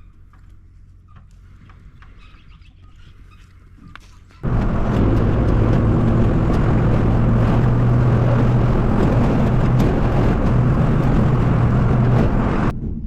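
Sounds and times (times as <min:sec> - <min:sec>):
vehicle engine hum: 0:00.0 - 0:12.7
road noise: 0:04.2 - 0:12.7.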